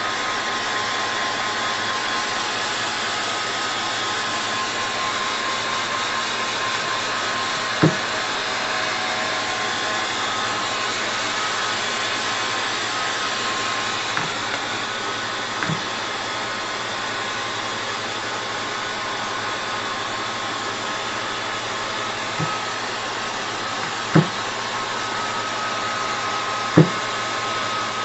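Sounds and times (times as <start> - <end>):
hair dryer blowing: 0.0 - 28.0
soft thumps: 7.6 - 8.1, 14.2 - 14.6, 15.6 - 15.9, 22.4 - 22.6, 23.8 - 24.4, 26.8 - 27.0.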